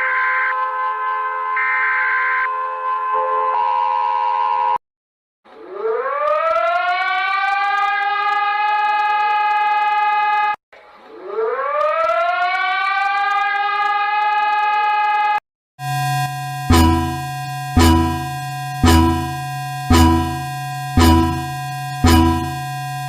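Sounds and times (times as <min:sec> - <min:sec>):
emergency siren winding up: 0:05.6 - 0:10.6, 0:11.3 - 0:23.0
multi-pitch alert tone: 0:15.9 - 0:23.0.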